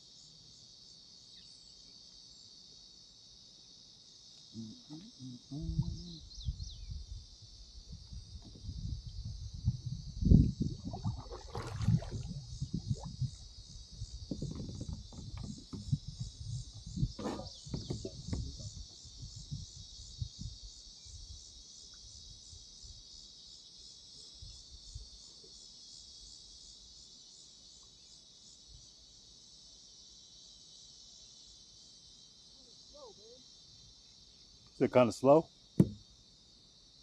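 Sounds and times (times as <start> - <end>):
insects droning: 0.0 - 37.0
paddle splashes: 10.7 - 18.9
knocks against kayak: 14.3 - 18.8, 35.8 - 36.0.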